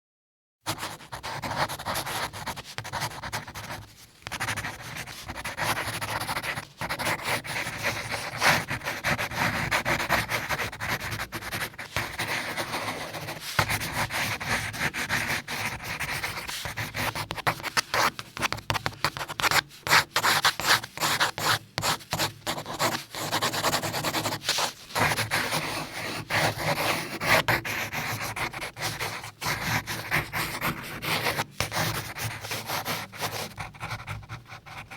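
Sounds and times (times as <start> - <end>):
pencil scratching on paper: 0.7 - 34.9.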